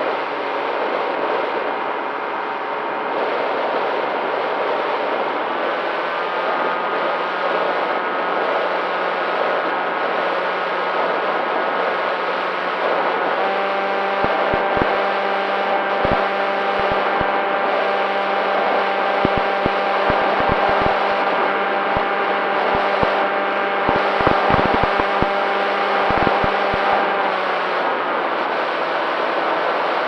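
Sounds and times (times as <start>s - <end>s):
sharp clicks and crackles: 14.2s - 15.0s, 16.0s - 17.4s, 19.1s - 21.3s, 21.9s - 23.2s, 23.9s - 27.0s.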